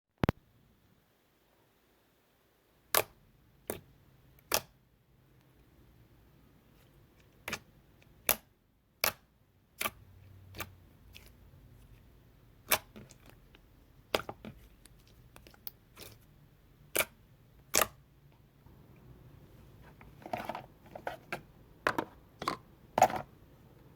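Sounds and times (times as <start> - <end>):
faint low hum: 13.4 - 23.9.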